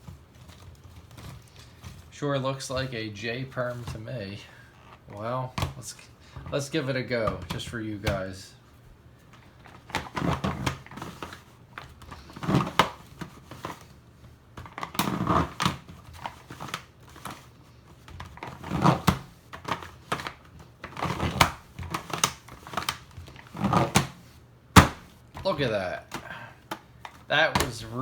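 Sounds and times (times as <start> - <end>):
plastic cube layers scraping and clacking: 9.6 - 14.0, 14.6 - 24.3.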